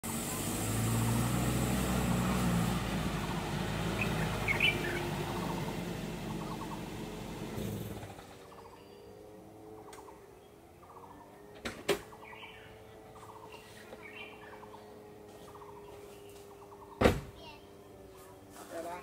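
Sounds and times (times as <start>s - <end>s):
vehicle engine rumble: 0.0s - 19.0s
bird chirps: 3.9s - 6.9s, 8.4s - 18.4s.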